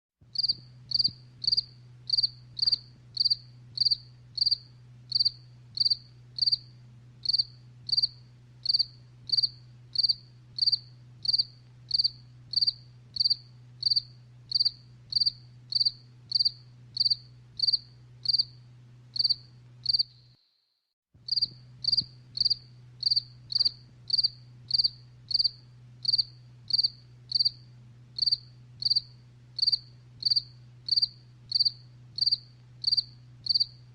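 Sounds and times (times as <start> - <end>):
faint low hum: 0.2 - 20.4, 21.2 - 33.9
cricket chirping: 0.4 - 18.6, 19.2 - 33.9.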